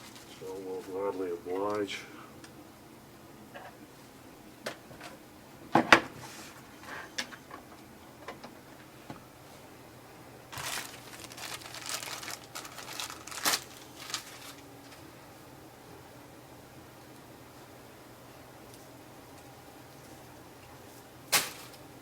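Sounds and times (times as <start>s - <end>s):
plastic packaging crinkling: 0.0s - 0.9s, 10.5s - 15.0s.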